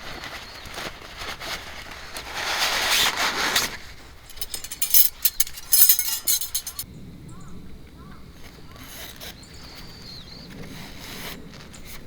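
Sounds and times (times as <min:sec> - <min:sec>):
metallic clinks and clatters: 0:04.3 - 0:06.8
rustling: 0:04.3 - 0:06.8.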